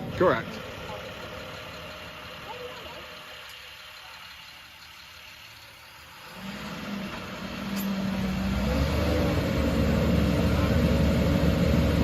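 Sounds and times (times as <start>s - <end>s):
vehicle engine revving up: 6.2s - 12.0s.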